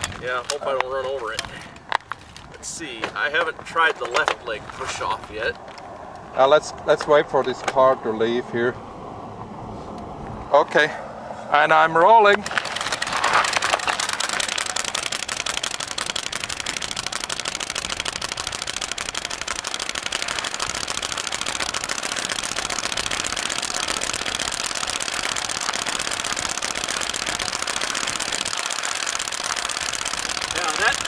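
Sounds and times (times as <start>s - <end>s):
playing card clicking on bicycle spokes: 12.4s - 31.0s.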